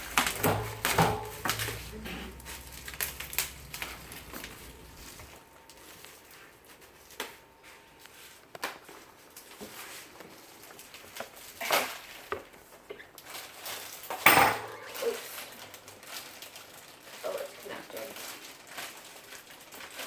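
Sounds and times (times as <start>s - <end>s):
bicycle knocks and clatter: 0.0s - 1.9s
packaging rustling: 0.0s - 14.1s, 14.7s - 20.0s.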